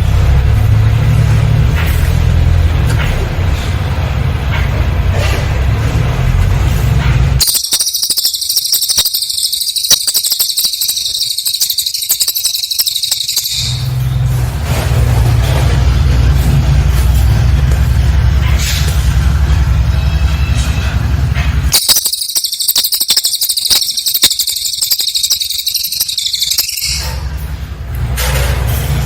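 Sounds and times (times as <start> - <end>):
high-pitched bird trill: 7.4 - 14.7, 21.7 - 27.5.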